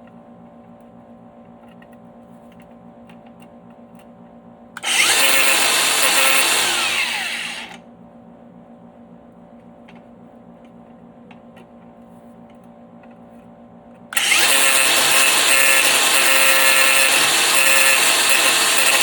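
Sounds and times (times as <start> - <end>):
angle grinder grinding metal: 4.8 - 7.8, 14.2 - 19.0.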